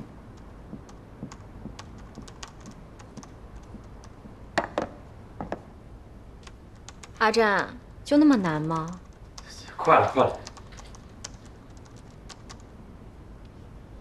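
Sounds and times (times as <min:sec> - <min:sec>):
computer keyboard typing: 0:00.3 - 0:04.2, 0:06.4 - 0:07.2, 0:08.4 - 0:09.6, 0:10.2 - 0:12.7.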